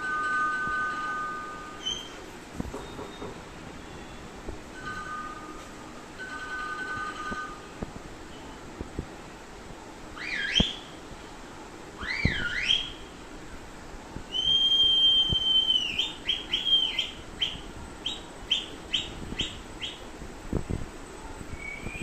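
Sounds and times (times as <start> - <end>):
long steady whistle: 1.7 - 4.2, 10.2 - 11.0, 12.0 - 13.1, 14.3 - 19.1, 21.2 - 22.0
short whistle chirps: 1.8 - 2.2, 10.2 - 10.9, 14.3 - 17.1, 21.6 - 22.0
warbling whistles: 1.8 - 2.2, 10.2 - 11.0, 12.0 - 13.0, 14.3 - 20.0, 21.5 - 22.0.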